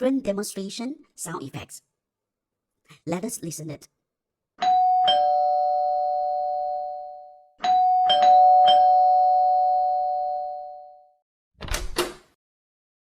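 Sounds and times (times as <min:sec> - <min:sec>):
two-tone doorbell chime: 0:04.6 - 0:11.2.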